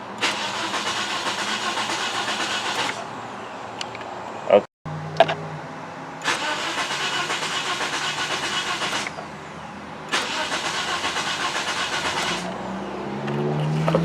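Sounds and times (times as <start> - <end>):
car engine cranking without starting: 0.0 - 3.1, 6.2 - 14.0.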